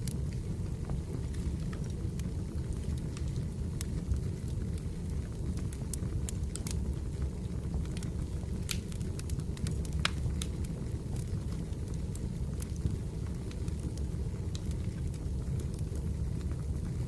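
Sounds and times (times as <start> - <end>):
fire crackling and popping: 0.0 - 17.0
fire rumbling: 0.0 - 17.0.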